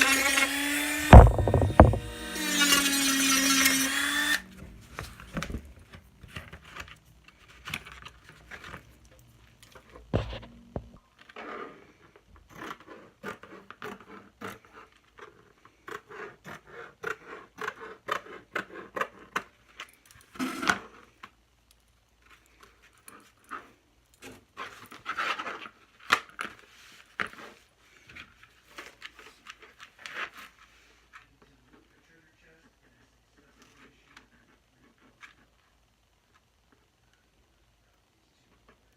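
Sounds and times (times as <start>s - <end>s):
hands working materials: 0.0s - 21.0s
loud knocks: 1.0s - 2.3s.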